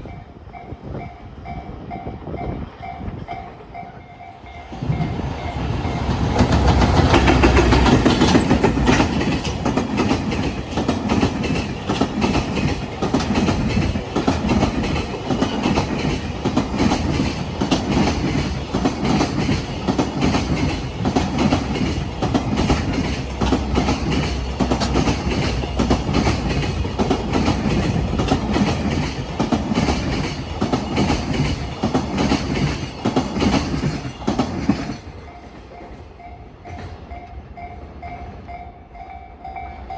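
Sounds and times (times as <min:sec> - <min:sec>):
train wheels clattering over rails: 0:04.7 - 0:38.5.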